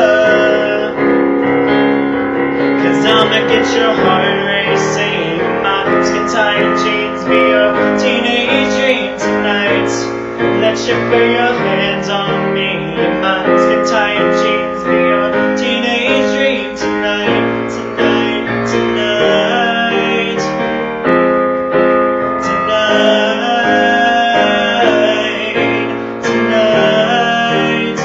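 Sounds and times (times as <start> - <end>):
piano music: 0.0 - 28.0.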